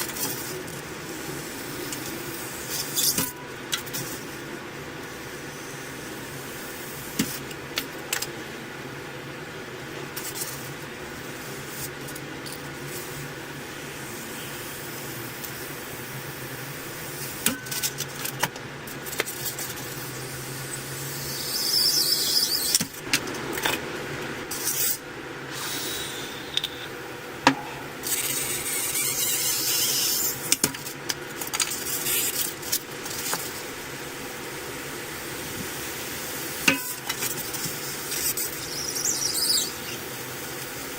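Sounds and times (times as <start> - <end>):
foam squeaking under hot wire: 19.3 - 22.8, 28.0 - 33.5, 36.8 - 40.2.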